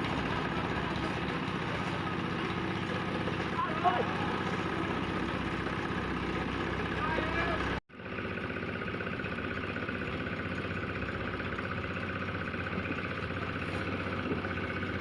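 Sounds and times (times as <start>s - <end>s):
small engine idling: 0.0s - 15.0s.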